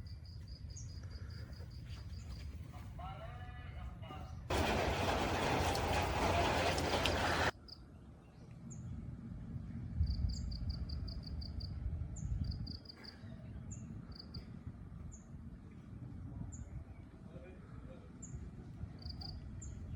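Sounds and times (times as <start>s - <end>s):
loud rushing noise: 4.5s - 7.5s.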